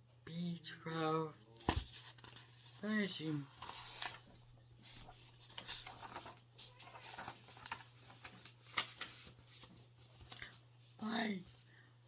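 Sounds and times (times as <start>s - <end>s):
faint clicks and rustles: 3.6s - 10.6s.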